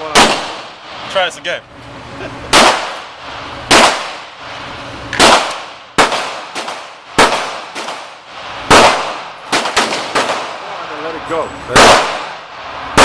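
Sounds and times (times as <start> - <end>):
rifle gunshots: 0.0 - 1.1, 2.5 - 4.5, 5.1 - 10.9, 11.7 - 13.0.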